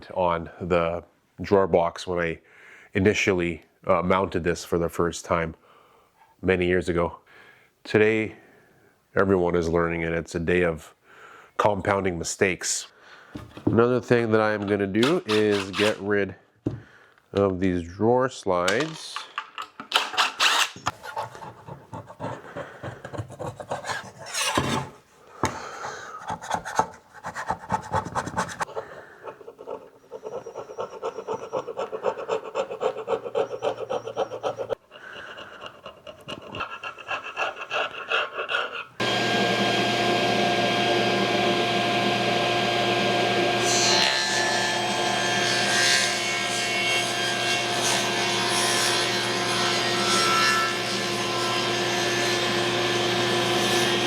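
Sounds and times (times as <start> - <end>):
wood scraping and rasping: 15.0 - 16.0, 20.4 - 25.0, 25.7 - 39.2
power tool motor running: 39.0 - 43.8.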